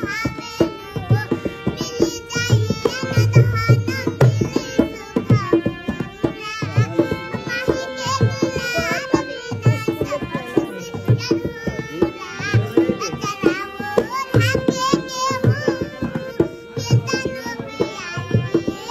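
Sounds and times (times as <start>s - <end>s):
girl singing: 0.0s - 18.9s
hand drum beats: 0.0s - 18.9s
held accompanying note: 0.0s - 18.9s.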